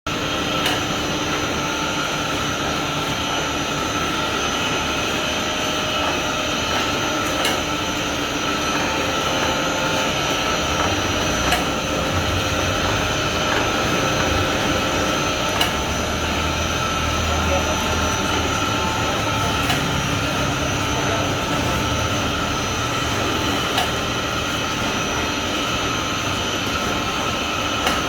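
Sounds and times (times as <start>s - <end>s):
machine hum with high whine: 0.1s - 28.0s
sharp machine clicks: 10.6s - 17.3s, 18.0s - 24.3s.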